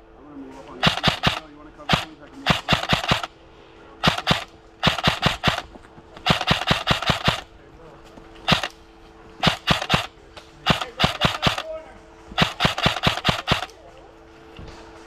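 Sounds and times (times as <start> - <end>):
airsoft gun firing bursts: 0.7 - 3.3, 4.0 - 7.5, 8.4 - 8.8, 9.4 - 13.8.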